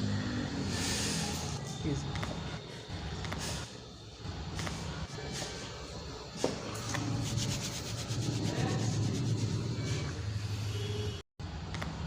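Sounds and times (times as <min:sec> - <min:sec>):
hands rubbing over body: 0:07.0 - 0:09.8.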